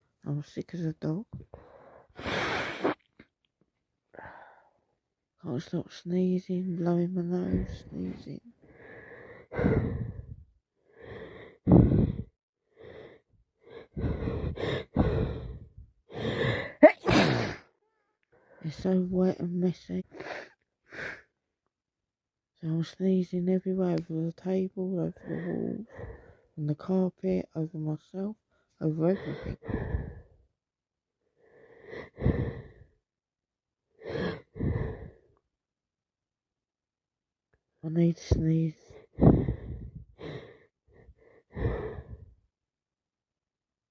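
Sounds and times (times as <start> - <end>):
woman gasping breaths: 8.6 - 17.7, 25.2 - 26.6, 29.3 - 30.4, 31.4 - 33.0, 34.0 - 35.4, 39.0 - 42.4
woman sneezing: 16.8 - 17.7.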